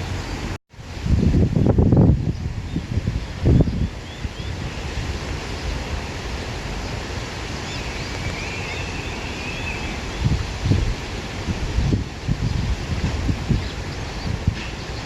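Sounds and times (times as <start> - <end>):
wind blowing through grass: 0.0 - 15.0
wind buffeting microphone: 0.0 - 15.0.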